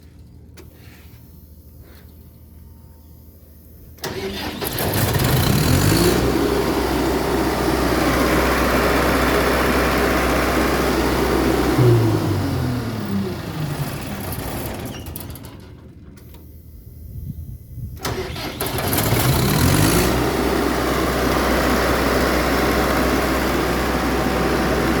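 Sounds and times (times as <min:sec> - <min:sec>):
diesel engine winding down and starting: 0:03.8 - 0:17.1, 0:17.8 - 0:25.0.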